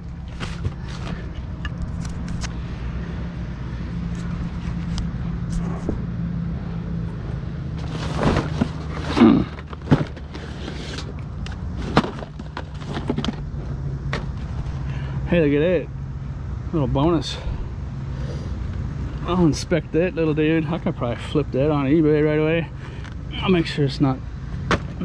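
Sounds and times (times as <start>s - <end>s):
low engine hum: 0.0s - 25.0s
scrap knocking and rustling: 0.2s - 2.5s, 7.8s - 14.8s.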